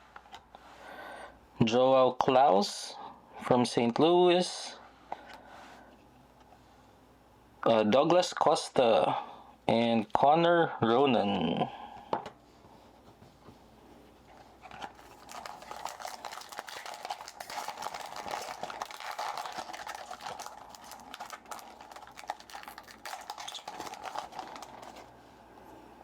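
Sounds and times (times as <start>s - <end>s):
cards and wrapper crackling: 14.6s - 25.1s.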